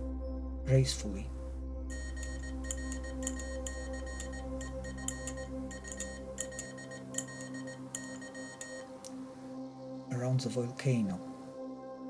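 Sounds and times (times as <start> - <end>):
ambient synth drone: 0.0 - 10.1
morse code beeps: 1.9 - 9.5.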